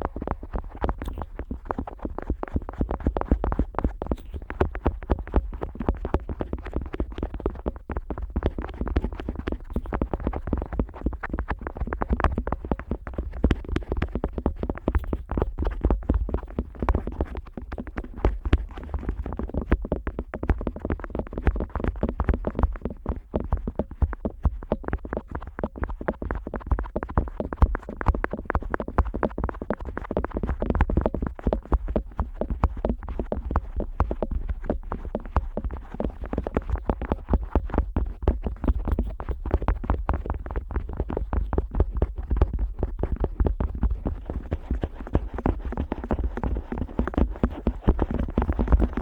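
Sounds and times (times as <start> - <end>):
plastic tip rubbing and tapping: 0.0 - 49.0.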